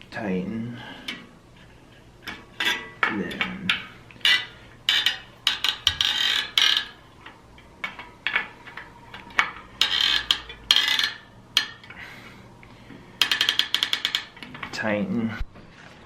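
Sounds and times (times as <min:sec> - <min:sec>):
metallic clicks from bicycle wheel: 0:13.2 - 0:14.6
short ratcheting rattles: 0:13.2 - 0:14.6.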